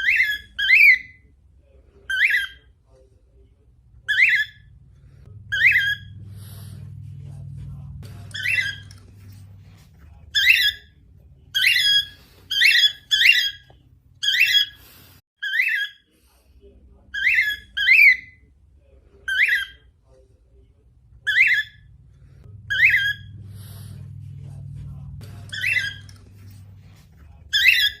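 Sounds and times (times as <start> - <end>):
cockatiel chirping: 0.0 - 1.2, 2.1 - 2.6, 4.1 - 4.7, 5.5 - 6.6, 8.2 - 9.0, 10.3 - 16.0, 17.2 - 18.4, 19.3 - 19.8, 21.3 - 21.9, 22.7 - 23.4, 25.3 - 26.8, 27.5 - 28.0.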